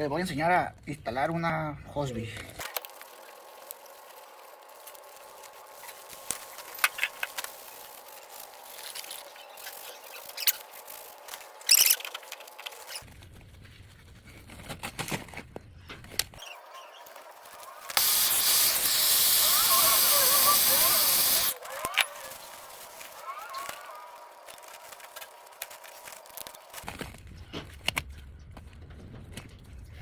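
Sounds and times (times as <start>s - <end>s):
water rushing from hose bib: 18.0s - 21.6s.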